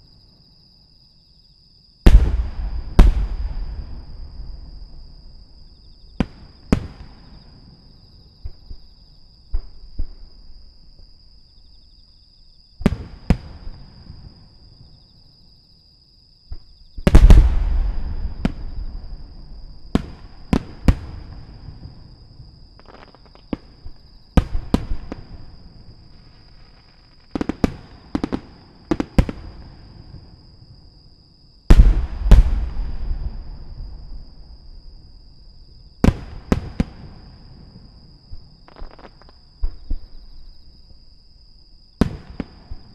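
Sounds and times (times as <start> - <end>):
firework shells bursting: 2.1 - 5.6, 17.1 - 21.2
rumbling echo: 17.2 - 19.8.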